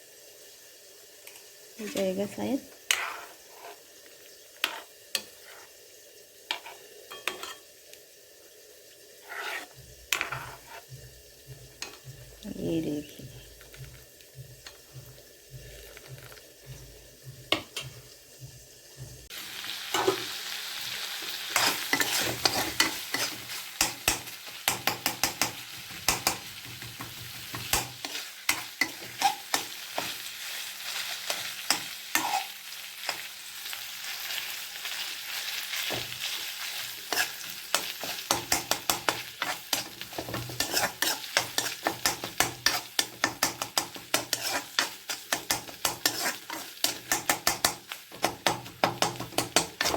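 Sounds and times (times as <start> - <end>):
curry sizzling in a pan: 0.0 - 49.9
metal spoon scraping a pan: 1.8 - 2.2, 2.8 - 4.0, 4.6 - 5.7, 6.5 - 7.7, 9.2 - 12.3, 21.0 - 34.4, 35.3 - 49.9.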